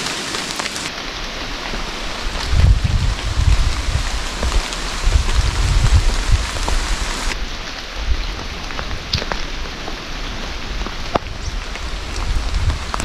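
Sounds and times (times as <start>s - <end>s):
raindrops tapping close by: 0.0s - 13.0s
steady rain falling: 0.0s - 13.0s
low rumbling bursts: 2.4s - 7.4s.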